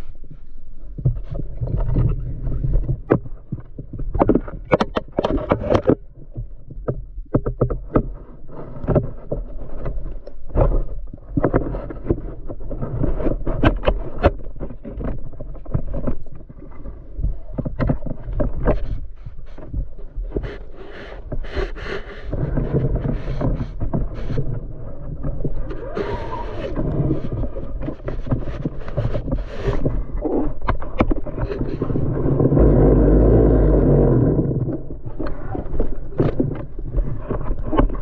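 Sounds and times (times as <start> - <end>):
sharp knocks and clicks: 2.8 - 12.4
boat low rumble: 14.1 - 38.0
wind on microphone: 21.4 - 38.0.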